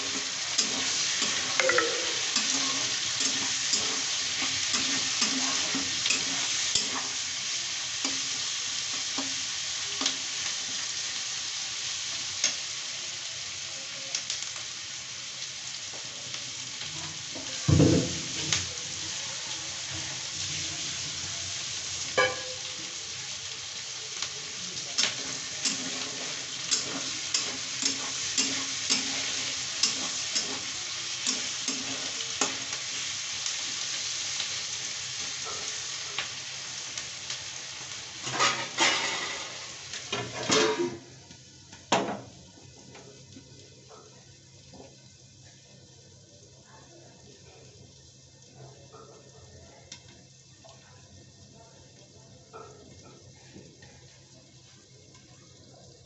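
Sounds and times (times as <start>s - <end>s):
spoon scraping a pan: 0.0s - 7.2s, 22.2s - 22.8s, 25.0s - 32.8s, 38.2s - 41.0s
chicken sizzling in a pan: 0.0s - 56.0s.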